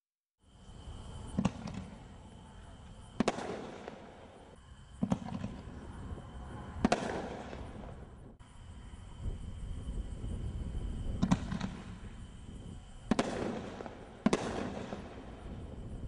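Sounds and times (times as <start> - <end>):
firework rumble and crackle: 1.1 - 16.0
firework shells exploding: 1.3 - 2.2, 3.1 - 5.8, 6.8 - 8.4, 11.2 - 12.3, 13.0 - 15.9.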